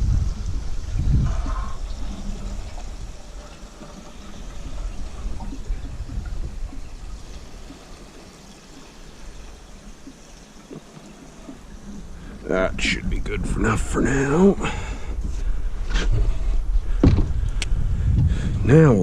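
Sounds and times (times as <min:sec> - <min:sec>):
fuel pouring into tank: 0:00.0 - 0:13.3
low rumble: 0:11.8 - 0:19.0.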